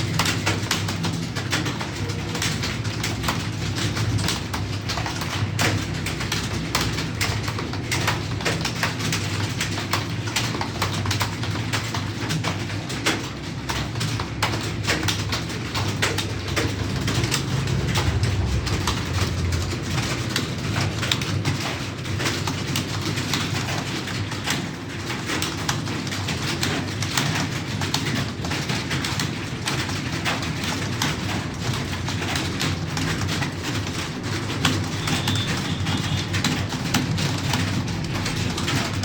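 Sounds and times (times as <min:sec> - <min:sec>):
keyboard typing: 0:00.0 - 0:39.0
low rumble: 0:17.2 - 0:20.8.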